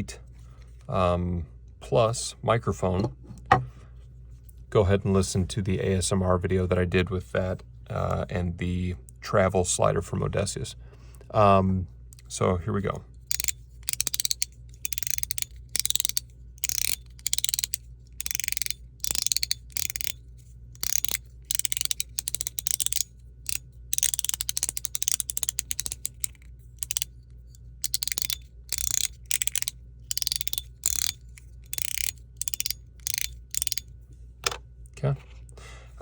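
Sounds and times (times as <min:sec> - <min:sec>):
fidget slider clicking: 0:13.3 - 0:20.2, 0:20.8 - 0:33.9.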